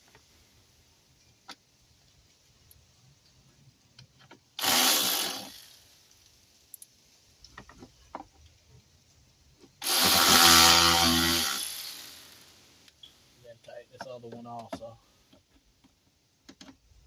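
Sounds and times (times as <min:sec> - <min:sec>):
cordless power tool spinning: 0:04.6 - 0:05.8, 0:09.8 - 0:12.5
handling clicks and taps: 0:14.0 - 0:16.8.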